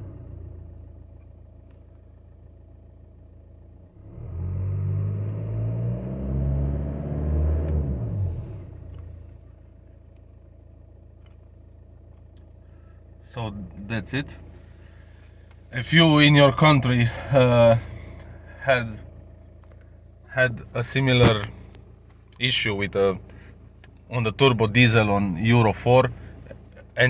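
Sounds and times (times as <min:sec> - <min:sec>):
diesel engine idling and revving: 0:00.0 - 0:27.0.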